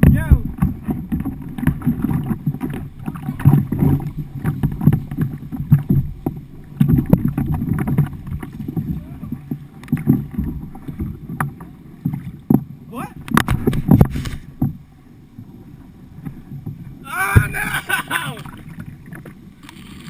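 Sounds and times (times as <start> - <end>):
water splashing and rushing: 0.0 - 20.0
knocks on kayak: 9.8 - 14.8, 17.3 - 17.7.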